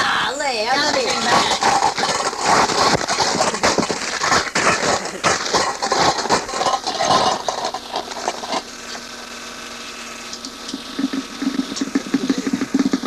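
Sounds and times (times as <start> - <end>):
plastic frisbee crunching and tearing: 0.8 - 9.3.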